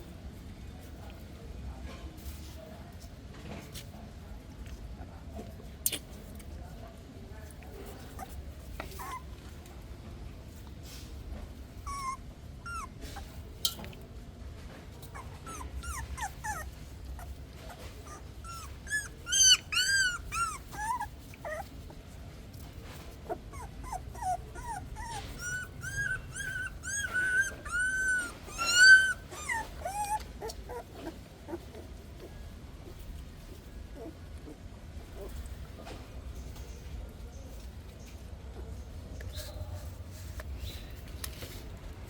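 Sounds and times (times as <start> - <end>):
puppies whimpering and squeaking: 8.0 - 9.3, 11.7 - 13.6, 15.0 - 22.0, 23.1 - 35.4.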